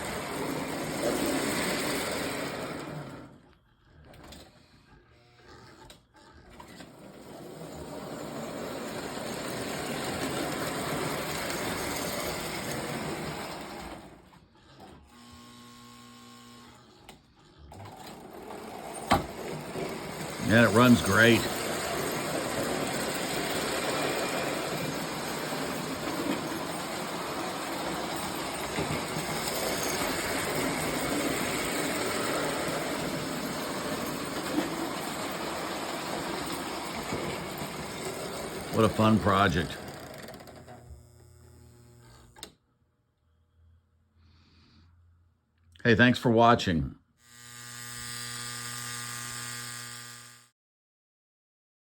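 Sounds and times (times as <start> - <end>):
toy train motor whir and rattle: 0.0 - 42.5, 47.2 - 50.5
wheels rumbling on rails: 19.4 - 39.9.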